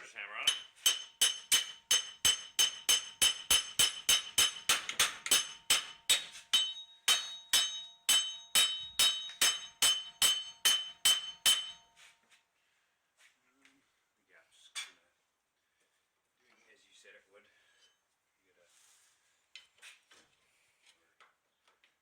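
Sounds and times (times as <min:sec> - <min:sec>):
hammer ringing on steel: 0:00.5 - 0:11.9.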